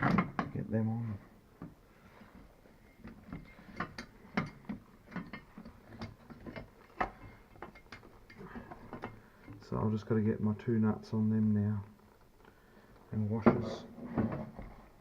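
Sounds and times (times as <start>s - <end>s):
metal bolts clicking and knocking: 3.0s - 9.6s.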